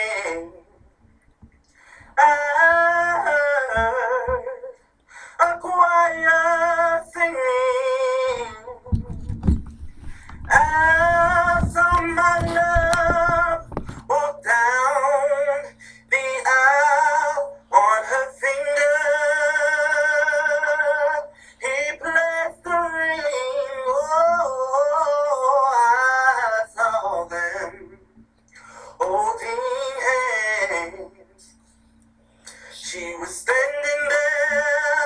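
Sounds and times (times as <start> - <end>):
high-pitched singing voice: 2.2 - 9.1
low rumble: 8.8 - 13.9.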